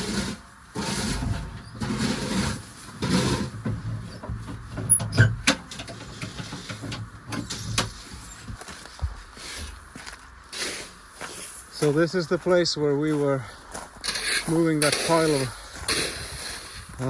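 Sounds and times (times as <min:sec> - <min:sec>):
footsteps crunching on ground: 0:07.9 - 0:17.0.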